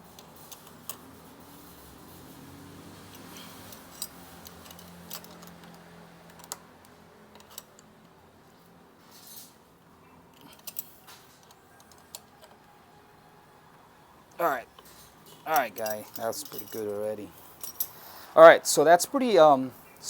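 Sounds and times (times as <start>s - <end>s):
metallic tool clicks and clinks: 0.1s - 8.2s, 10.3s - 12.6s, 14.4s - 18.0s.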